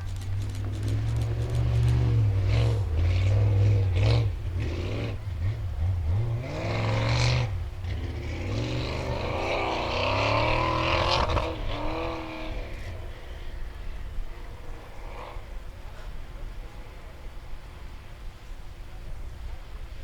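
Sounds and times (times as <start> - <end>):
sharp crack: 0.0 - 2.7
engine revving hard: 0.4 - 12.9.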